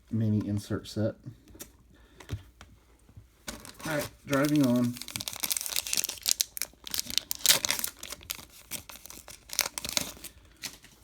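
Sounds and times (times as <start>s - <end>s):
wrapper crinkling and tearing: 3.5s - 11.0s.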